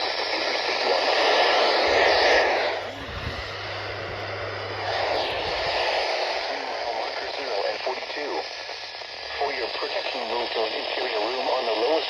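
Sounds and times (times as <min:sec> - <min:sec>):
radio static hiss: 0:00.0 - 0:12.0
low steady hum: 0:01.8 - 0:06.0.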